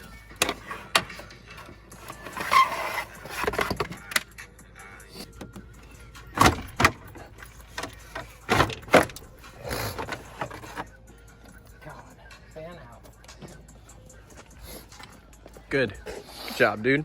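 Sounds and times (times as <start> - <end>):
scraping and rustling: 0.0 - 4.1, 6.3 - 11.0
tools clinking on metal parts: 5.2 - 11.0.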